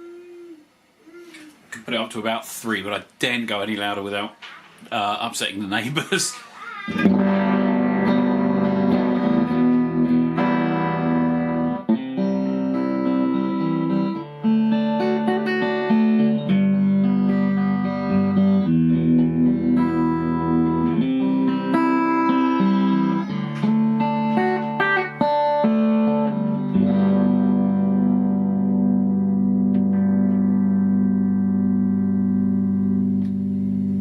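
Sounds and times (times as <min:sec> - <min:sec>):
electric guitar chords: 0:06.9 - 0:34.0.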